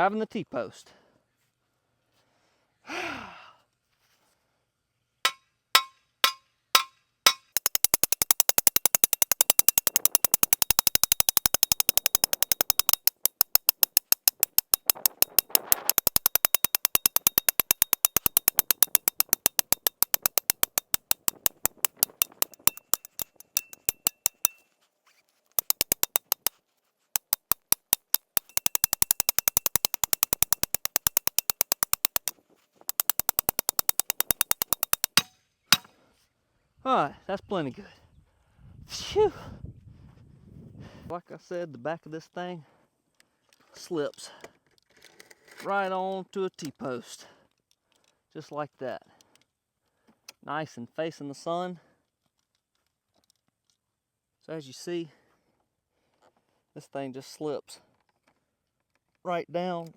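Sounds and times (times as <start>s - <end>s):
post driver striking metal post: 5.3s - 24.6s, 25.6s - 26.5s, 27.2s - 32.3s, 32.9s - 35.9s.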